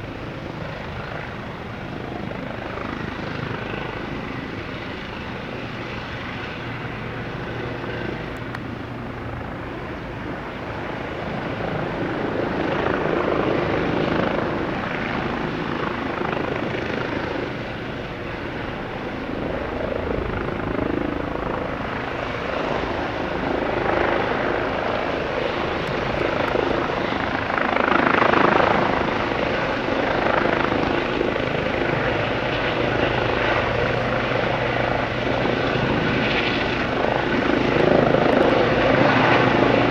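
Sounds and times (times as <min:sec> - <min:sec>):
helicopter rotor and turbine: 0:00.0 - 0:39.9.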